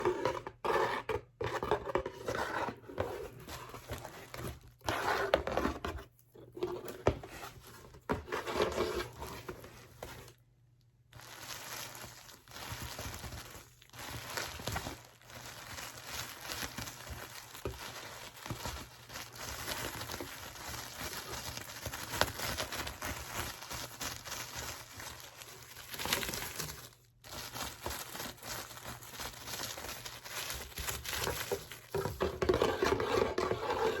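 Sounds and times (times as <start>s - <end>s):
packaging crinkling and tearing: 11.0s - 33.8s.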